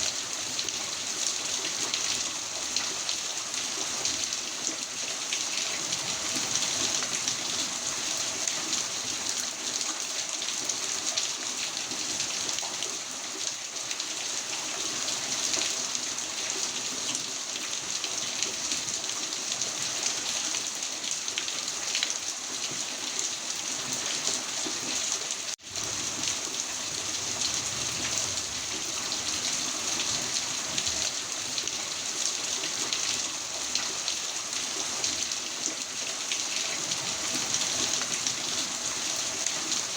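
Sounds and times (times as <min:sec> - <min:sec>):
heavy rain falling: 0:25.5 - 0:39.9.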